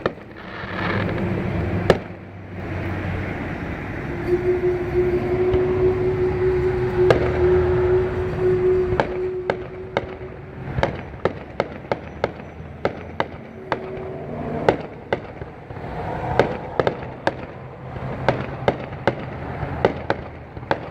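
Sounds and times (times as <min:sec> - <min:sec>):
fireworks cracking: 0:00.0 - 0:02.2
low rumble: 0:00.4 - 0:19.6
steady droning tone: 0:02.6 - 0:18.2.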